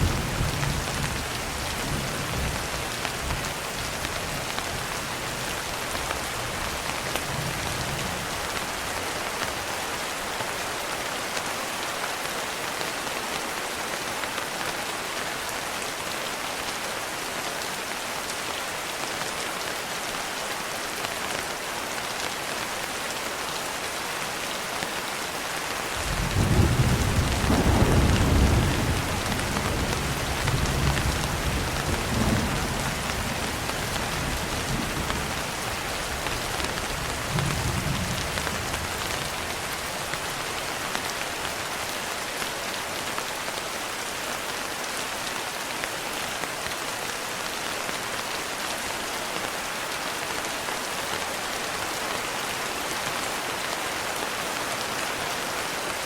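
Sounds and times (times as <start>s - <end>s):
steady rain: 0.0s - 56.0s
thunder rumbling: 26.0s - 35.4s.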